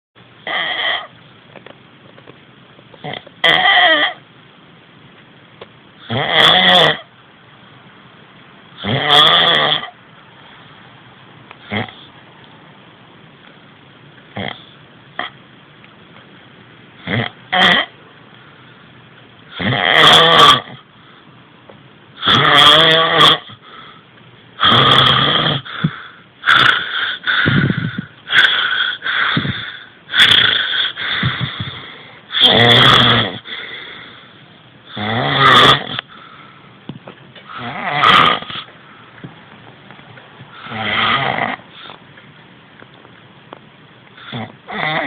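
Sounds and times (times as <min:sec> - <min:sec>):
loud snoring: 0:06.0 - 0:07.1, 0:08.8 - 0:10.0, 0:11.7 - 0:12.1, 0:14.4 - 0:15.3, 0:17.0 - 0:17.9, 0:19.5 - 0:20.8, 0:22.2 - 0:23.6, 0:24.6 - 0:33.6, 0:34.9 - 0:36.1, 0:37.5 - 0:38.7, 0:40.6 - 0:41.7, 0:44.2 - 0:45.0.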